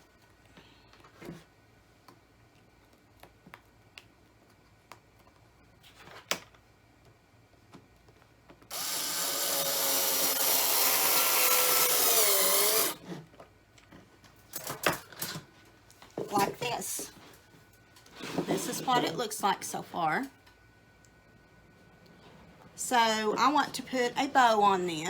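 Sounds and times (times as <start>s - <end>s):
power drill driving screw into wood: 8.7s - 13.0s.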